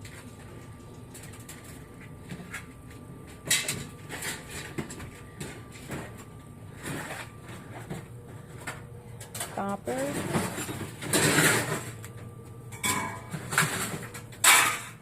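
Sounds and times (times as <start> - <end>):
scrap metal knocking and clattering: 9.4 - 12.0, 12.7 - 15.0.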